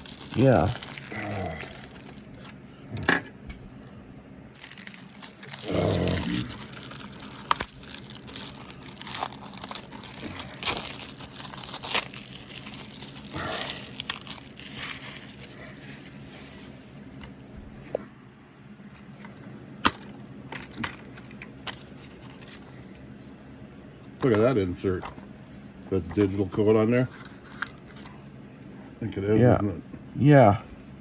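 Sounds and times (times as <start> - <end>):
plastic wrap crinkling and tearing: 0.0 - 2.5, 4.6 - 17.3.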